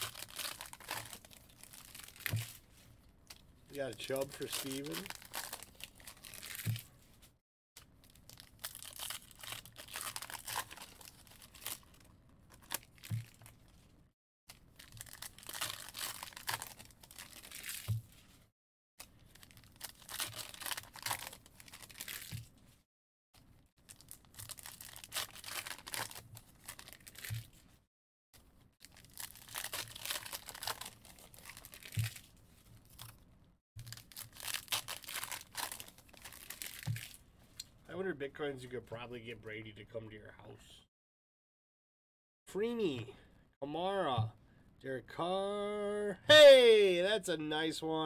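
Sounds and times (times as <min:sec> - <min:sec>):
foil wrappers tearing and crinkling: 0:00.0 - 0:02.6, 0:03.8 - 0:06.8, 0:08.1 - 0:13.5, 0:14.8 - 0:17.9, 0:19.2 - 0:22.4, 0:23.9 - 0:27.4, 0:28.8 - 0:33.2, 0:33.8 - 0:37.2
cards being handled: 0:03.9 - 0:06.9.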